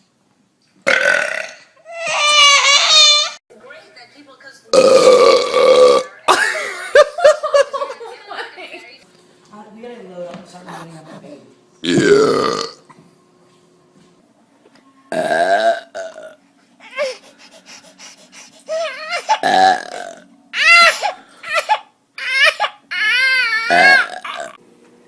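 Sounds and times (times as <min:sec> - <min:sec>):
loud human burps: 0:00.8 - 0:01.8, 0:04.7 - 0:06.1, 0:11.8 - 0:12.9, 0:15.1 - 0:16.4, 0:19.4 - 0:20.3, 0:23.7 - 0:24.6
baby wailing cries: 0:01.8 - 0:03.4, 0:16.8 - 0:17.5, 0:18.7 - 0:19.5, 0:20.6 - 0:24.6.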